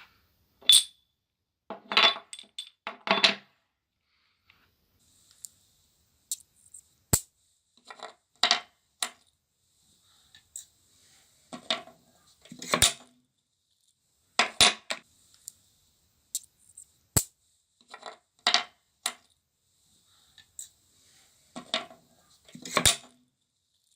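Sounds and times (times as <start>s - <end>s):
metal pieces clinking: 0.6s - 0.9s, 1.9s - 3.3s.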